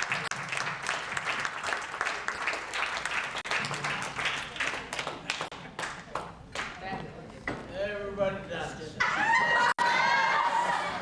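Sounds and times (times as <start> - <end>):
audience applauding: 0.0 - 6.0.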